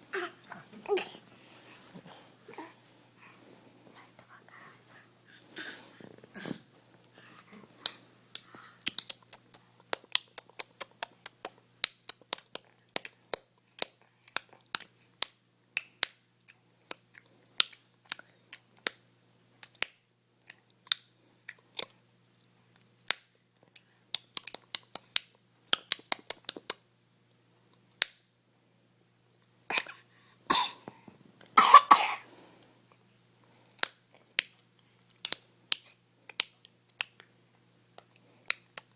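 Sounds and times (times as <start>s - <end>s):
baby clicking tongue: 7.8s - 13.2s.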